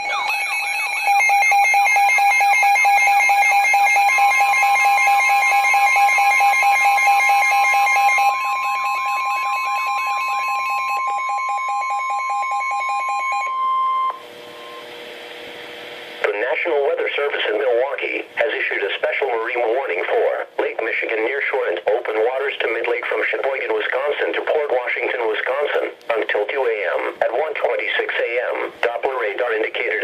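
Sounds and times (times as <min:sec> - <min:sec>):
warbling electronic beeping: 0:00.0 - 0:01.1
steady warning tone: 0:00.0 - 0:14.9
faint static: 0:14.1 - 0:30.0.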